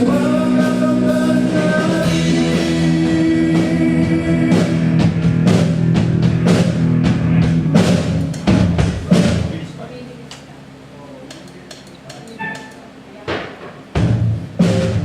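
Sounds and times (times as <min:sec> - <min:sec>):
guitar and bass notes: 0:00.0 - 0:09.8, 0:13.8 - 0:15.0
drum kit: 0:00.0 - 0:10.5, 0:11.3 - 0:15.0.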